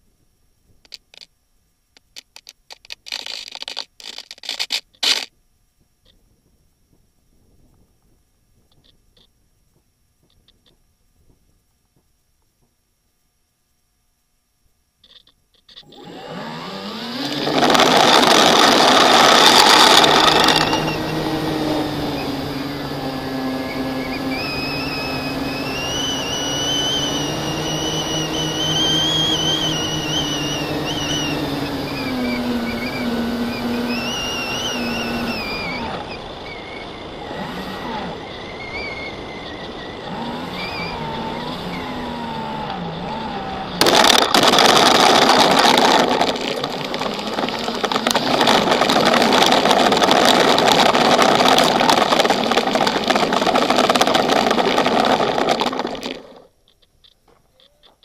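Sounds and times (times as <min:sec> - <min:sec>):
drone motors whining: 0:15.0 - 0:56.8
loud rushes of noise: 0:15.9 - 0:56.4.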